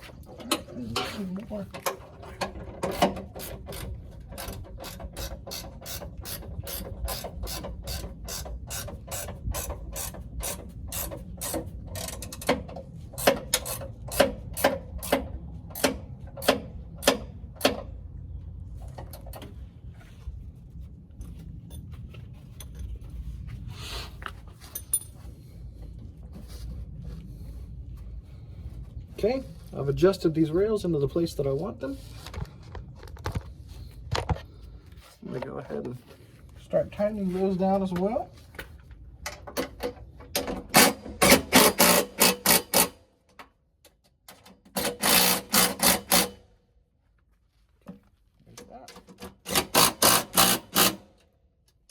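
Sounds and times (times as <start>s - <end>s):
low background rumble: 0.0s - 39.5s
ratchet wrench clicking: 44.8s - 46.4s, 49.5s - 51.1s.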